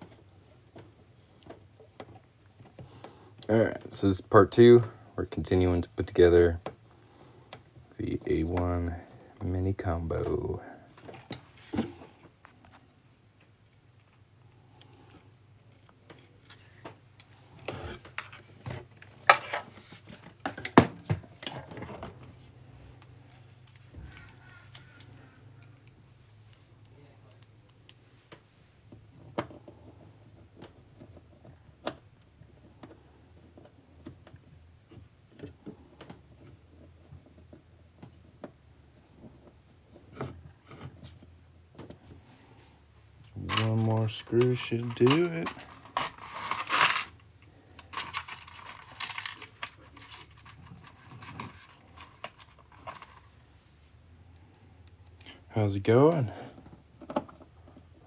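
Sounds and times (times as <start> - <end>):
hard parts clicking and clattering: 43.2 - 53.6.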